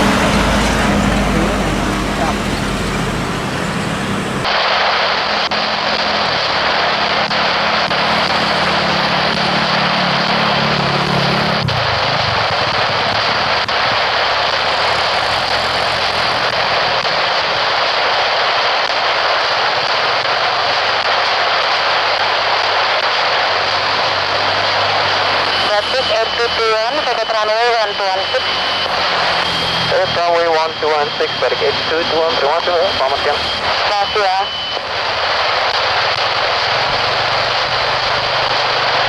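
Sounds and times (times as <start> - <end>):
low hum: 0.0 - 17.8
jet engines rushing: 0.0 - 39.0.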